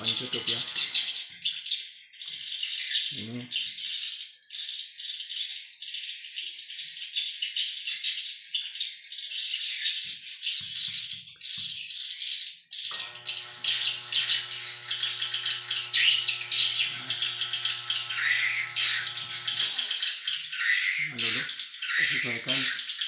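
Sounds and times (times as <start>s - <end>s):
small motor humming: 0.0s - 1.2s, 12.9s - 20.5s.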